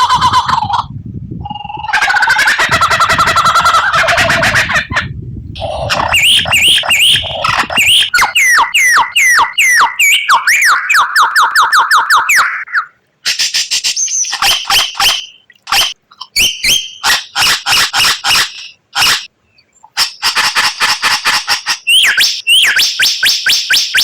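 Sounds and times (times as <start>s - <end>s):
songbird singing: 0.0s - 20.4s, 21.7s - 24.0s.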